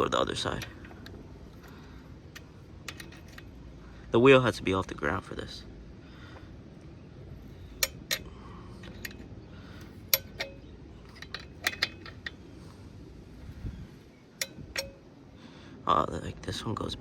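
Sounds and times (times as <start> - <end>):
wrench clicking on metal bolts: 0.0 - 3.6, 7.7 - 12.4, 14.4 - 15.0.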